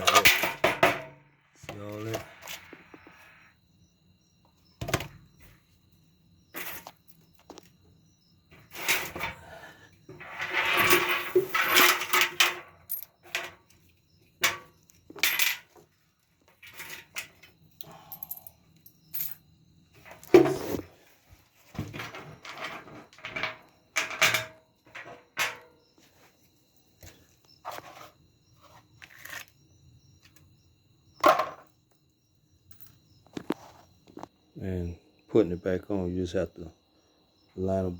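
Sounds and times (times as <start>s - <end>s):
metal parts clinking and clattering: 0.0s - 1.1s, 10.4s - 13.6s, 14.4s - 15.8s, 22.0s - 25.7s
metal rattling and scraping: 0.0s - 2.3s, 10.1s - 13.6s, 21.7s - 25.7s.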